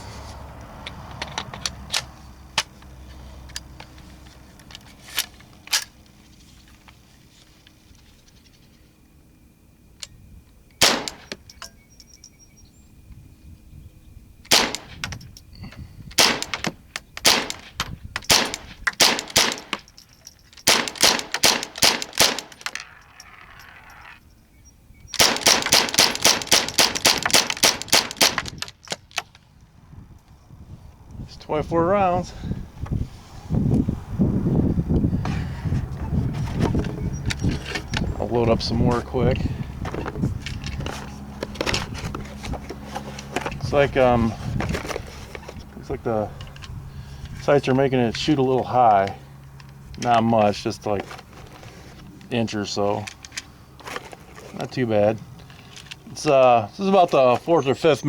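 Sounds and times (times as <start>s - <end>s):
rifle shots: 10.8s - 11.3s, 14.5s - 15.0s, 16.2s - 16.6s, 17.2s - 17.7s, 18.3s - 19.8s, 20.7s - 22.6s, 25.2s - 28.5s.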